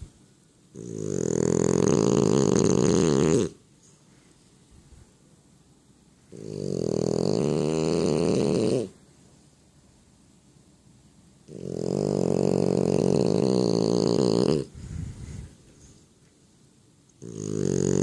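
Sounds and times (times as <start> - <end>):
heavy snoring: 0.8 - 3.6, 6.3 - 8.9, 11.5 - 15.4, 17.2 - 18.0.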